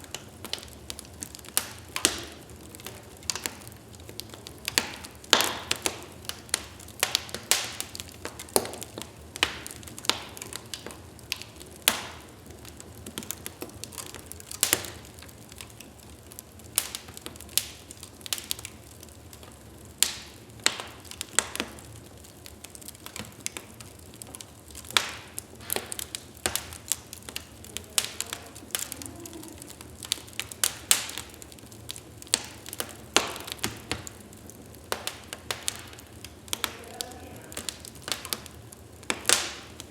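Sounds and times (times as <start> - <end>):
crackles and pops of burning logs: 0.0 - 39.9.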